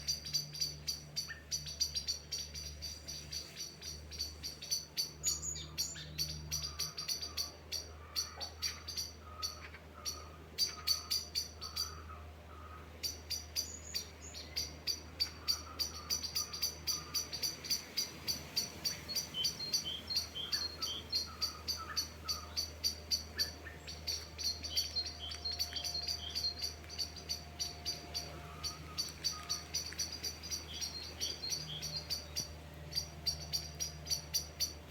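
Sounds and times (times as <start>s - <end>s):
birds chirping: 0.0s - 34.9s
steady low hum: 8.8s - 34.9s.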